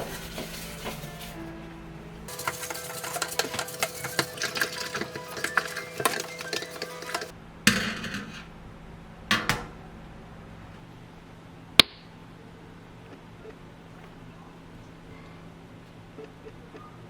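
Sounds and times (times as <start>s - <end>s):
appliance motor clattering: 2.3s - 7.3s.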